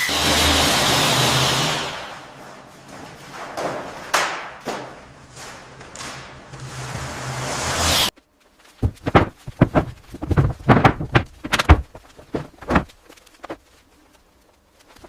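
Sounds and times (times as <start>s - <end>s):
irregular knocks and thuds: 8.7s - 13.6s.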